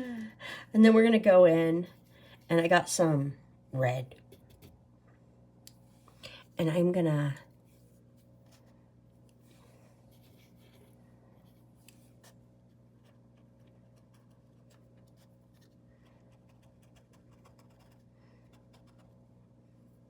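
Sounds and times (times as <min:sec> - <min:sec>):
low electrical hum: 0:00.0 - 0:20.0
paintbrush scratching: 0:13.0 - 0:19.2.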